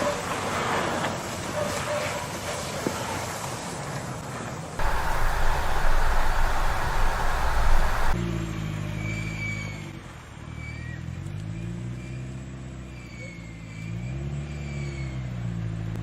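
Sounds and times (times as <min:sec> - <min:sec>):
car engine revving: 0:04.8 - 0:08.2
faint high whine: 0:04.8 - 0:08.2
loud rushing noise: 0:04.8 - 0:08.2.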